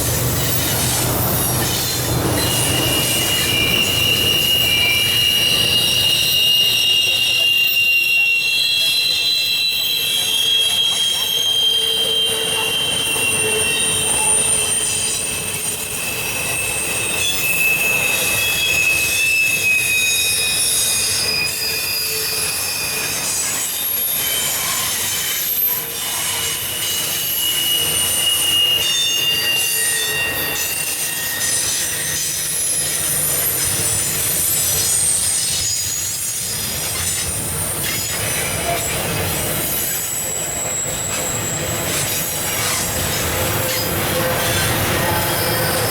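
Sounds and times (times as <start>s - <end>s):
freight train rumbling past: 0.0s - 7.2s, 30.5s - 45.9s
steel wheels squealing: 0.0s - 45.9s.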